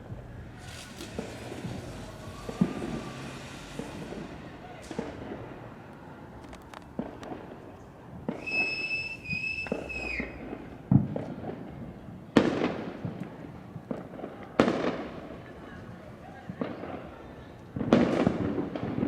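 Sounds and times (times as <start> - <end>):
firecrackers popping: 0.0 - 19.0
loud firework bangs: 0.0 - 19.0
firework whistle: 0.1 - 7.4, 8.3 - 10.7.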